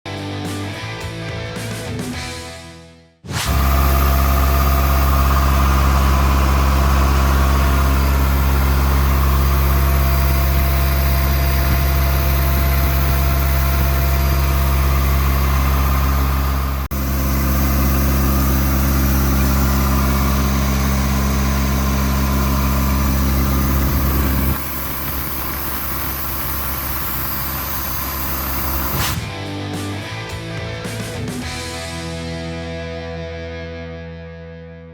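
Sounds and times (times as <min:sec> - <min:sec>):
diesel air compressor droning: 0:03.4 - 0:29.2.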